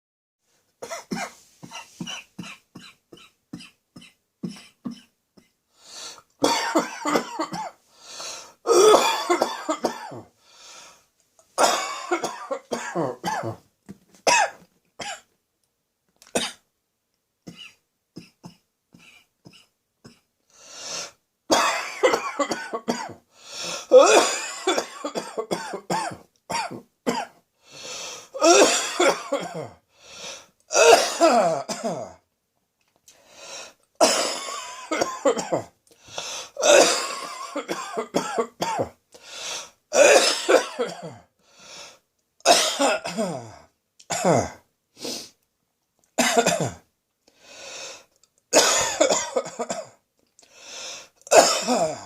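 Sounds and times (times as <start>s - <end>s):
person coughing: 0.8s - 5.6s, 6.4s - 7.8s, 8.7s - 10.3s, 11.6s - 13.6s, 14.3s - 15.3s, 21.5s - 27.4s, 28.4s - 29.8s, 30.7s - 32.2s, 34.0s - 39.0s, 39.9s - 41.3s, 42.5s - 44.6s, 46.2s - 46.9s, 48.6s - 50.0s, 51.3s - 52.0s.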